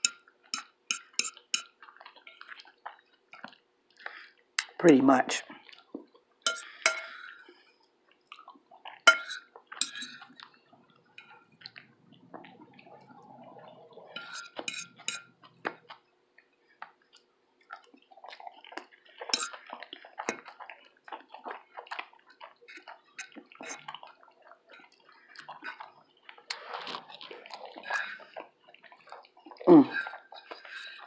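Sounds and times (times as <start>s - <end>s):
dishes and cutlery clinking: 0.0s - 1.8s, 6.5s - 7.4s, 9.1s - 10.5s, 14.1s - 15.8s, 19.3s - 19.6s
chewing and lip smacks: 0.0s - 4.8s, 5.4s - 31.0s.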